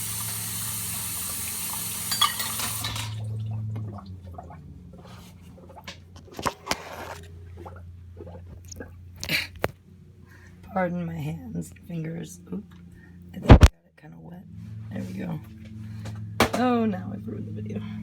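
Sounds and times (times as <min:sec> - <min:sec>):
kitchen tap running: 0:00.0 - 0:04.6
dishes and cutlery clinking: 0:02.0 - 0:03.2.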